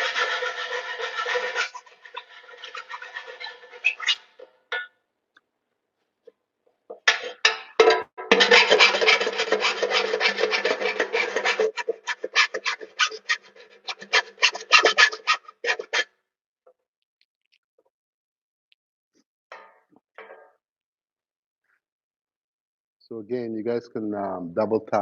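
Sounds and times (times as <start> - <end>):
hand file rasping on metal: 0.0 - 4.4, 8.3 - 16.1.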